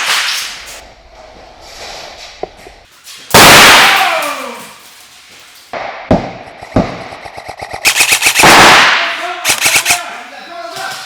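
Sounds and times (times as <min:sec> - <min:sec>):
airsoft gun shots: 0:05.8 - 0:10.1
loud echoing bang: 0:08.4 - 0:09.4.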